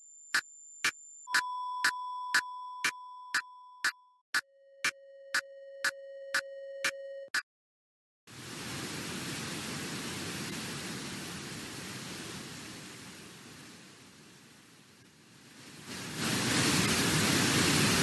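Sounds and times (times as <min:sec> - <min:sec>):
electronic tone with clicks: 0:00.0 - 0:04.2, 0:04.8 - 0:07.4
generated noise hiss: 0:08.4 - 0:18.0.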